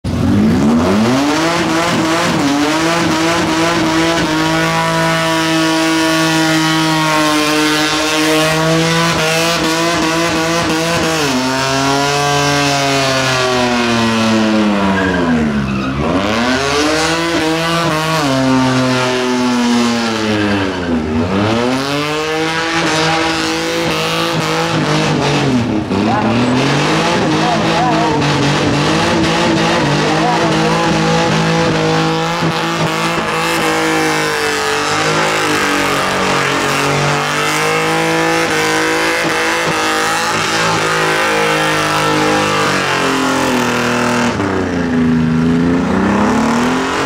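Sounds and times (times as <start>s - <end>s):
engine at high revs: 0.0s - 47.0s
tyres squealing: 14.8s - 17.1s.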